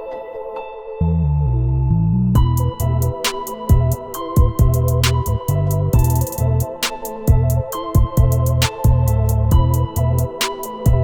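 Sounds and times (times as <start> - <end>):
synthesizer chords: 0.0 - 11.0
bass line: 1.0 - 11.0
hi-hat ticks: 2.4 - 11.0.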